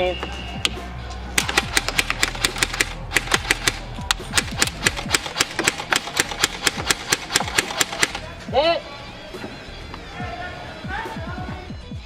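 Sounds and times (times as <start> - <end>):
airsoft guns firing: 1.4 - 8.3.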